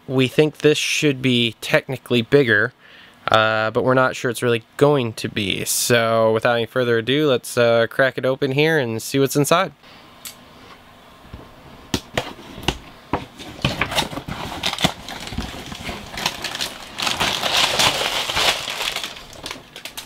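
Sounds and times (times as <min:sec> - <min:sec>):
plastic bags rustling: 0:13.2 - 0:20.0.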